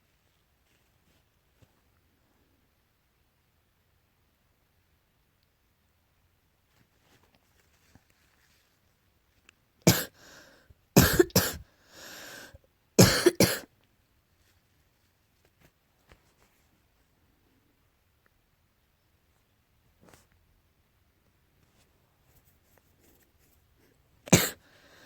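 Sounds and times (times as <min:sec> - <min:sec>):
person coughing: 0:09.9 - 0:10.2, 0:11.0 - 0:11.6, 0:13.0 - 0:13.7, 0:24.3 - 0:24.6
breathy sound: 0:10.0 - 0:12.6.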